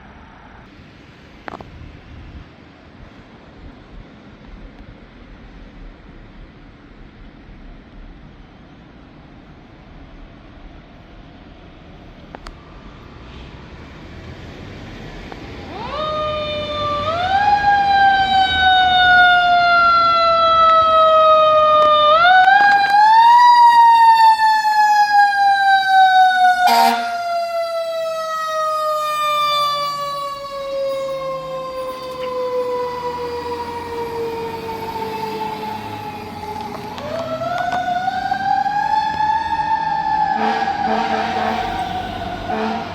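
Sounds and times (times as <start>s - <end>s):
fire engine siren wailing: 12.6s - 42.9s
short sharp siren burst: 15.8s - 42.9s.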